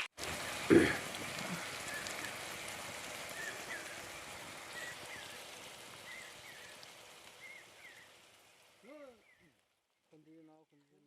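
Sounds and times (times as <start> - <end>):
hot oil sizzling in a pan: 0.0 - 10.2
faint bird chirps: 3.3 - 8.2, 8.9 - 9.6.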